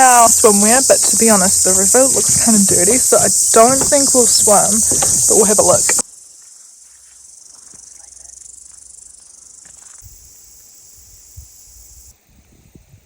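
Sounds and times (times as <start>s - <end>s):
insects chirping: 0.0s - 13.0s
soft low thumps: 0.2s - 6.0s.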